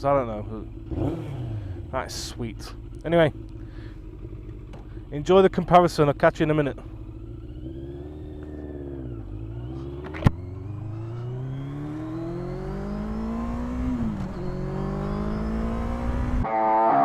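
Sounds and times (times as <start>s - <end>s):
motorcycle engine accelerating: 0.0s - 17.0s
guitar music: 15.7s - 17.0s.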